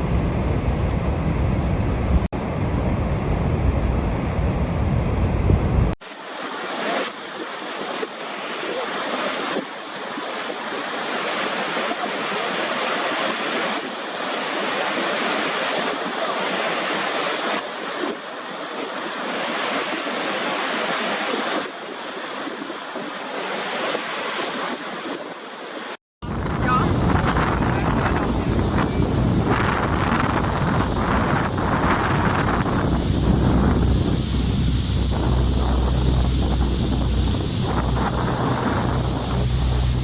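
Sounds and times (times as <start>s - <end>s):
waterfall rushing: 6.0s - 40.0s.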